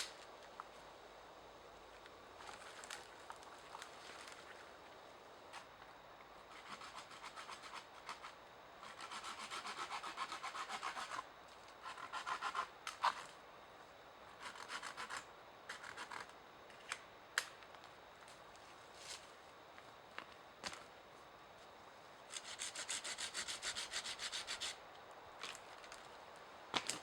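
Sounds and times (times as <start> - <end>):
hand saw cutting wood: 6.6 - 11.2, 11.8 - 13.2, 14.4 - 16.2, 22.3 - 24.8.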